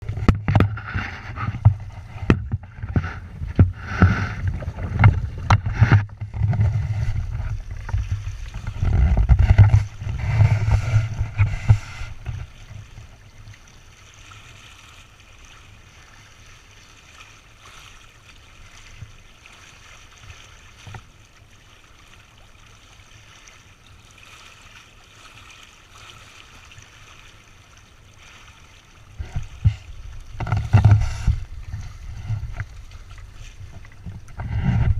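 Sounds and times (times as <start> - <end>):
wind buffeting microphone: 0.0 - 13.6, 29.2 - 34.9
water rushing along hull: 0.0 - 34.9.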